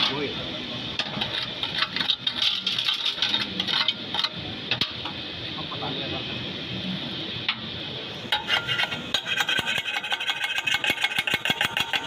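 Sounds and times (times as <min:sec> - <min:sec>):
welding arc crackling and popping: 0:08.3 - 0:12.0.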